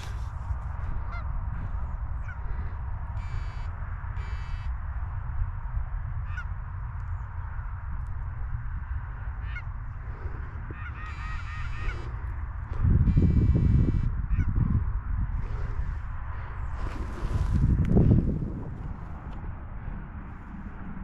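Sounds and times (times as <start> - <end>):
geese honking: 0.0 - 4.7, 6.2 - 6.5, 9.1 - 14.7
steady low rumble: 0.0 - 21.0.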